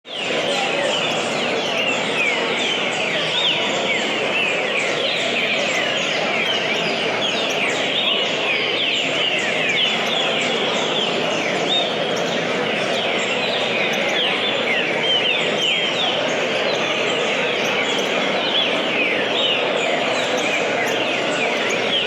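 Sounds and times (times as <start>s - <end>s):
bird chirping song: 0.1s - 22.0s.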